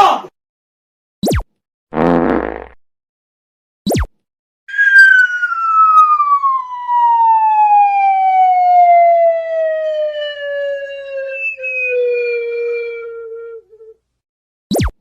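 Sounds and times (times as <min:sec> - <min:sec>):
siren-like tone gliding down: 0:04.7 - 0:14.0.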